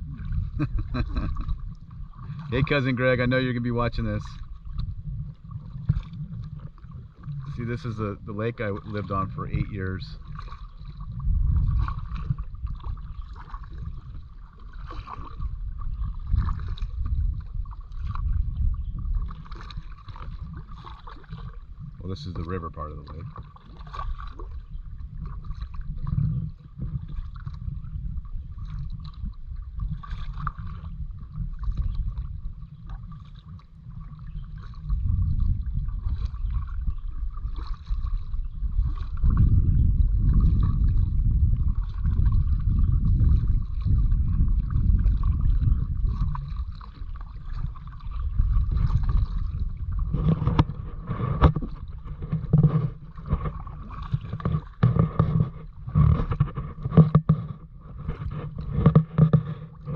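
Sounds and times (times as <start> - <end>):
paddle knocking: 0.0 - 18.4, 19.0 - 27.6, 40.2 - 59.9
water gurgling: 0.0 - 59.9
wind rumbling on microphone: 0.0 - 59.9.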